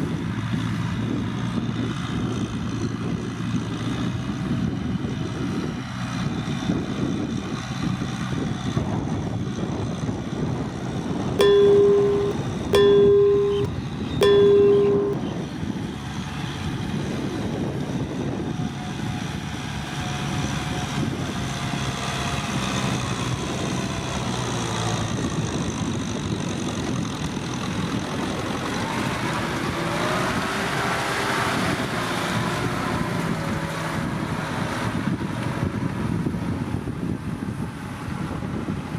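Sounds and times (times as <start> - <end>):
horn honks: 11.4 - 15.2.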